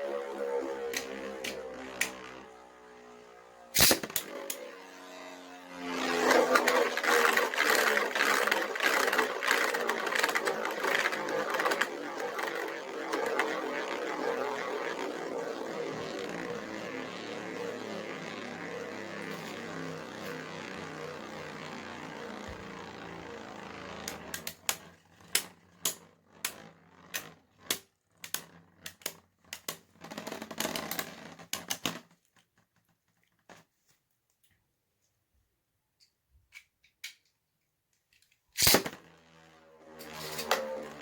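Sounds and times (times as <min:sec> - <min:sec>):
spinning tops whirring: 0:00.0 - 0:31.9, 0:38.6 - 0:41.0
spinning tops clacking and rattling: 0:06.2 - 0:20.5.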